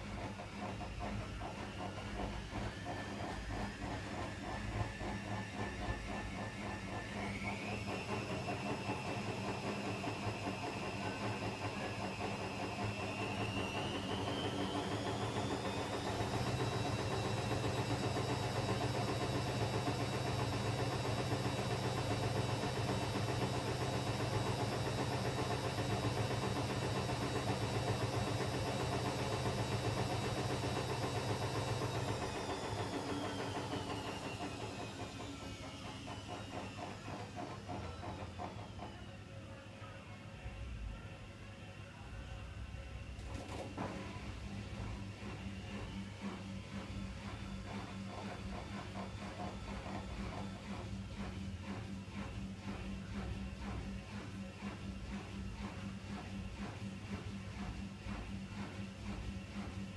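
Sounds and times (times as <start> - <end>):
washing machine spinning: 0.0 - 39.7, 42.7 - 59.9.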